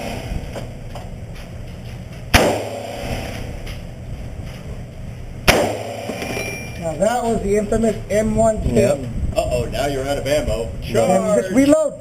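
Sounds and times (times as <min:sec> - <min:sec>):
rifle shot: 0:00.0 - 0:00.4, 0:02.3 - 0:03.6, 0:05.4 - 0:06.5.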